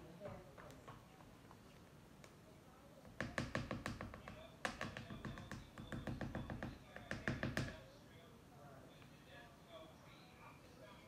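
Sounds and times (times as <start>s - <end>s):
spoon tapping plastic container: 3.1s - 7.8s.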